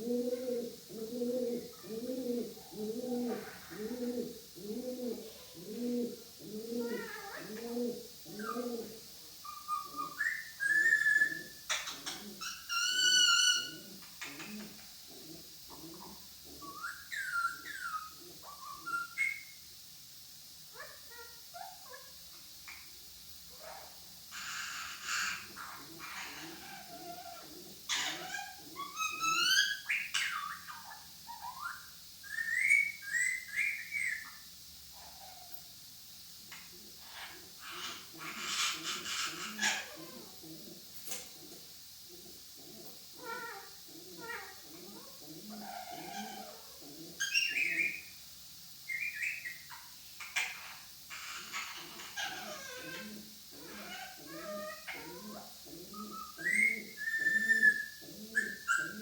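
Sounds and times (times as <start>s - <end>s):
parrot harsh call: 9.4s - 13.9s, 23.6s - 34.2s, 37.0s - 40.4s, 43.2s - 48.1s, 48.9s - 59.0s
parrot whistling: 56.0s - 59.0s.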